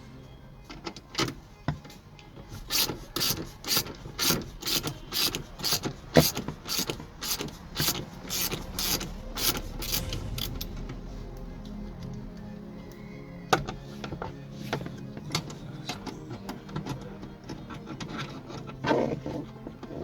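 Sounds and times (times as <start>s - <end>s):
ratchet clicking: 2.6s - 10.5s.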